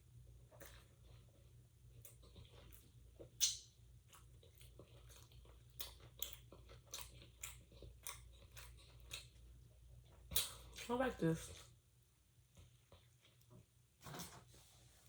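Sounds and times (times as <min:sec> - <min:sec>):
mouth chewing food: 0:00.4 - 0:11.8, 0:12.5 - 0:13.6
wet crunches and mouth clicks: 0:02.0 - 0:09.5, 0:10.1 - 0:10.9.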